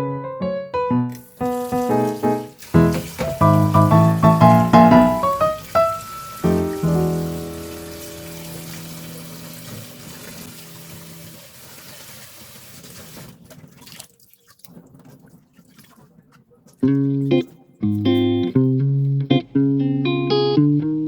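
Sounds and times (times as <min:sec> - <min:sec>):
background music held notes: 0:00.0 - 0:11.2, 0:16.8 - 0:21.0
water splashes and drips: 0:01.1 - 0:17.6
water running: 0:01.1 - 0:18.2.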